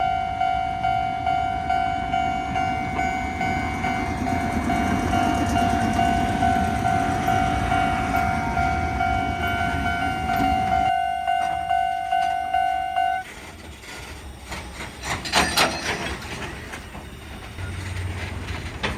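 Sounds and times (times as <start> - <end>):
level crossing bell ringing: 0.0 - 13.2
train rumbling: 0.0 - 18.9.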